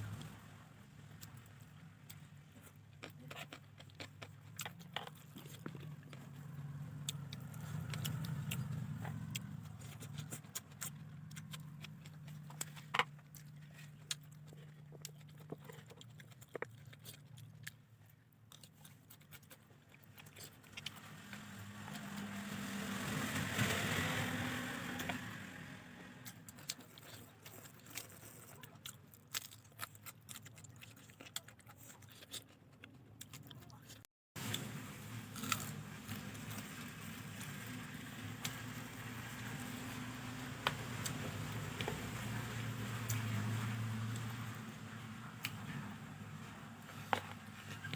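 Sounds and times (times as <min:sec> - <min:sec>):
close-up chewing and mouth sounds: 0:00.0 - 0:47.9
vehicle passing: 0:05.8 - 0:12.7, 0:20.6 - 0:26.6, 0:34.4 - 0:47.9
low engine hum: 0:05.8 - 0:12.9, 0:20.6 - 0:26.5, 0:34.4 - 0:47.9.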